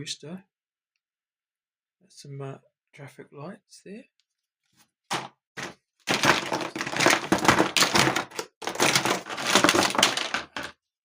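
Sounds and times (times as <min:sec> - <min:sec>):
plastic toy track pieces clattering: 0:05.6 - 0:10.8.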